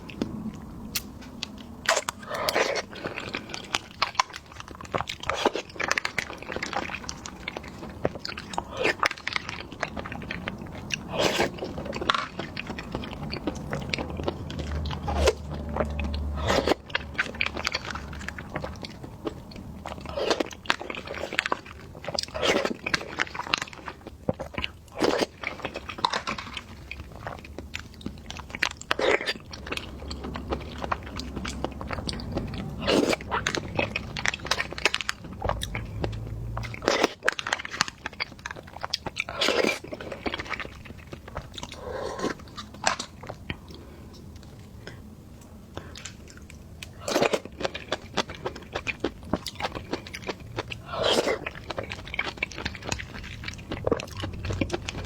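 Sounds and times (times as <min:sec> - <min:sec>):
wet chewing: 0:00.0 - 0:55.0
crisp bites of jelly snack: 0:01.9 - 0:43.6.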